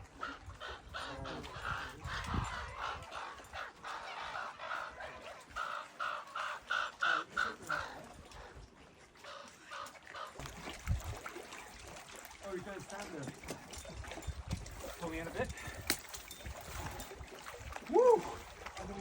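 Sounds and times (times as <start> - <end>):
crow cawing: 5.6 - 7.9.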